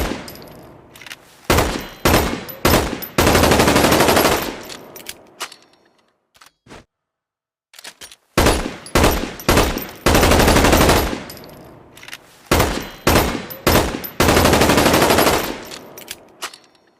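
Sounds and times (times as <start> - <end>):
rifle gunfire: 1.5 - 4.7, 8.4 - 11.4, 12.5 - 15.7.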